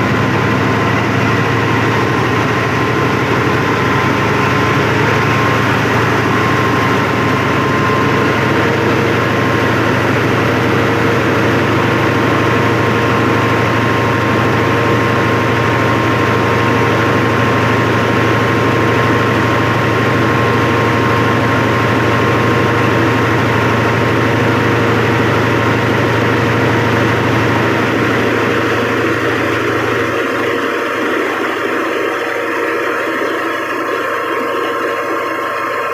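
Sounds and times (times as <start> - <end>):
diesel generator running: 0.0 - 35.9.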